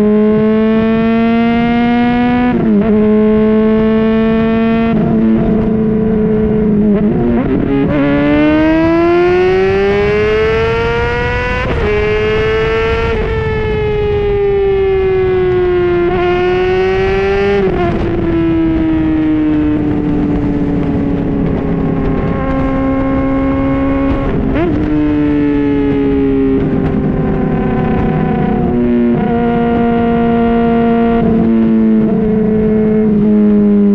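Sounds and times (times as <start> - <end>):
motorcycle engine revving: 0.0 - 33.9.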